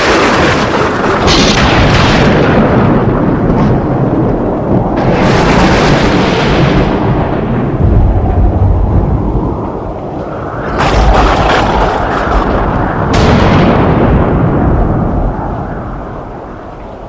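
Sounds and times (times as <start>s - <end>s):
thunder crack: 0.0s - 17.0s
thunder rumbling: 0.0s - 17.0s.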